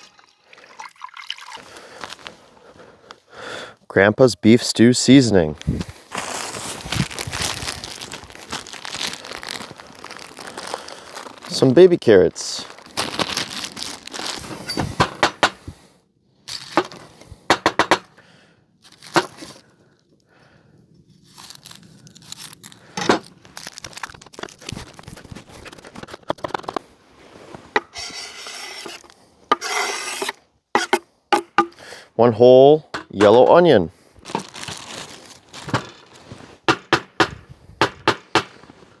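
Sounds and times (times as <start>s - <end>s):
plastic packaging crinkling: 6.0s - 15.0s, 18.8s - 19.7s, 21.2s - 26.8s, 34.2s - 36.6s.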